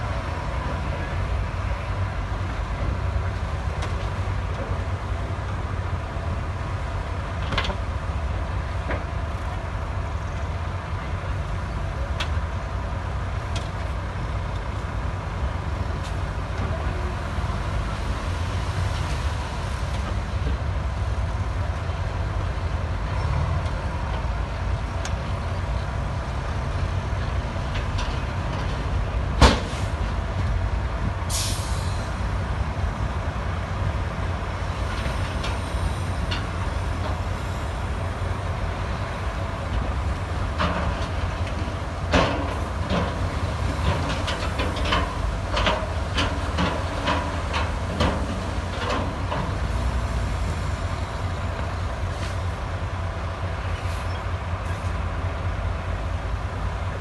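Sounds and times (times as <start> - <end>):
diesel machinery running: 0.0 - 57.0
short hiss of air: 31.3 - 32.2.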